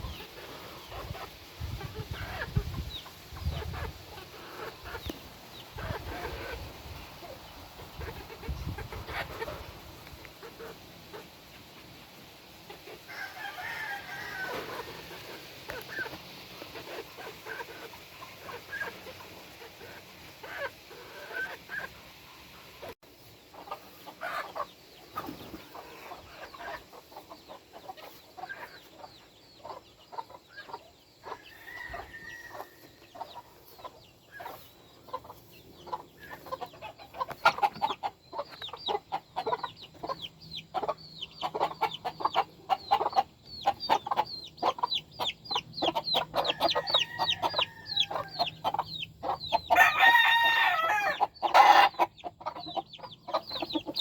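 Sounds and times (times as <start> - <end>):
chickens clucking: 0.0 - 54.0
rooster crowing: 13.1 - 14.9, 31.4 - 32.9, 46.4 - 48.5, 49.7 - 52.0.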